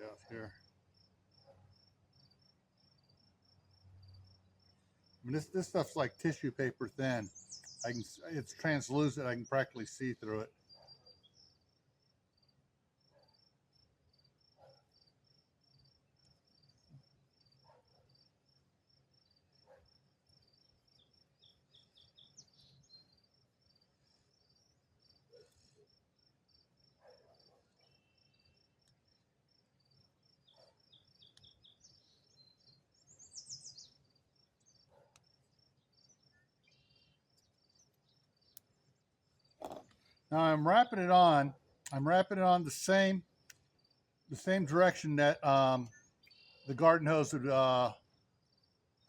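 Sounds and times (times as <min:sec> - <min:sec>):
cricket chirping: 0:00.1 - 0:40.4, 0:43.2 - 0:44.3, 0:47.8 - 0:49.0
bird chirp: 0:06.0 - 0:11.6, 0:20.6 - 0:25.7, 0:27.0 - 0:28.8, 0:30.4 - 0:35.1, 0:35.7 - 0:40.2, 0:45.8 - 0:47.0.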